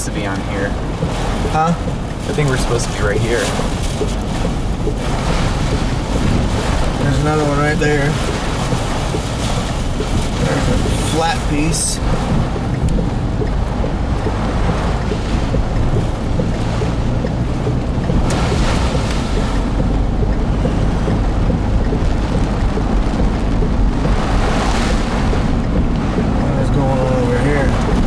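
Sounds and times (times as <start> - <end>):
low road rumble: 0.0 - 28.0
storm wind buffeting car: 0.0 - 28.0.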